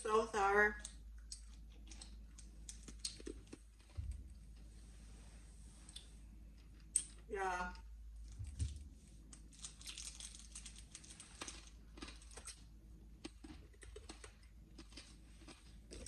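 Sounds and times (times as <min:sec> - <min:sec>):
faint irregular clicks: 0:00.8 - 0:04.7.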